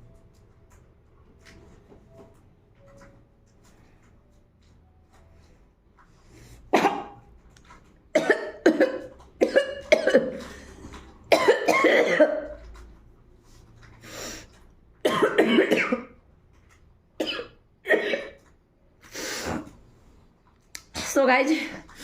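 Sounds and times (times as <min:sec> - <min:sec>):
woman coughing: 0:06.8 - 0:07.2, 0:08.2 - 0:10.5, 0:11.3 - 0:12.6, 0:15.0 - 0:16.1, 0:17.2 - 0:18.4.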